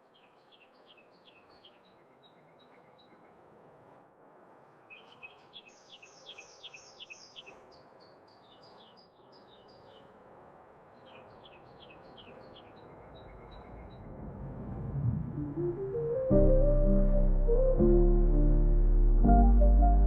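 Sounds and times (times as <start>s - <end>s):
birds chirping faintly: 0.0s - 3.6s, 4.8s - 14.3s.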